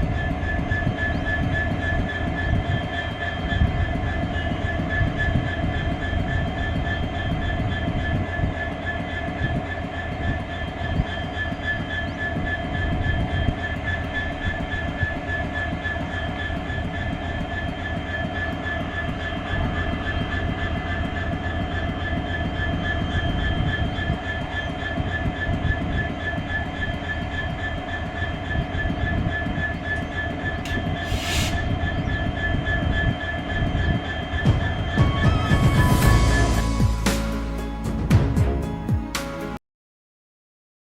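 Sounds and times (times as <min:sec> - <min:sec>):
brief hiss: 0:30.7 - 0:31.6.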